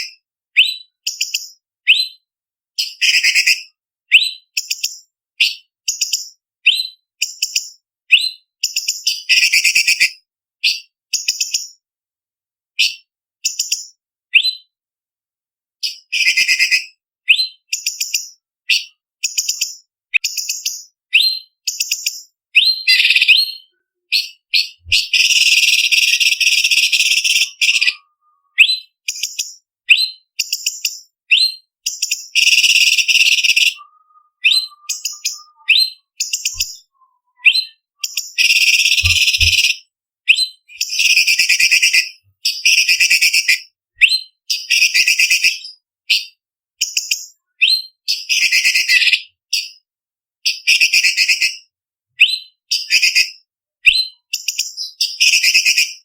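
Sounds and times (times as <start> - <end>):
bird chirping and trilling: 15.8 - 49.7.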